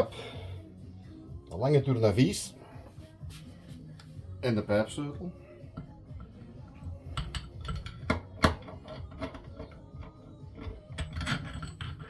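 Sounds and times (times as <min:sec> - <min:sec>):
metal tools clicking and knocking: 0:07.0 - 0:12.0.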